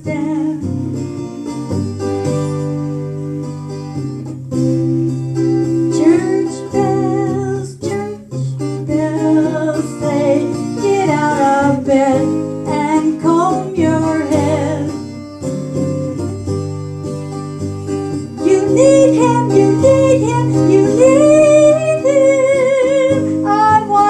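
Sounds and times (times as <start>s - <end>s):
woman singing with vibrato: 0.0s - 1.7s, 5.9s - 15.0s, 18.4s - 24.0s
guitar accompaniment: 0.0s - 24.0s.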